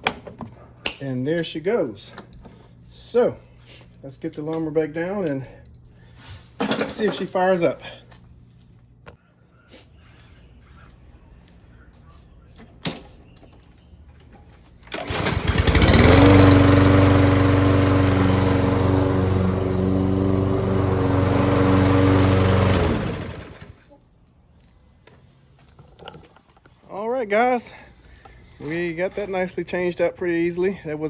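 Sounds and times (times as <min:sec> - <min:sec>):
lawn mower engine running: 0:14.8 - 0:23.8.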